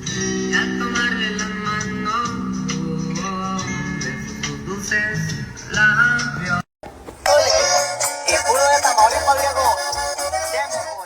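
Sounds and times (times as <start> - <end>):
man singing over held notes: 7.3 - 11.0.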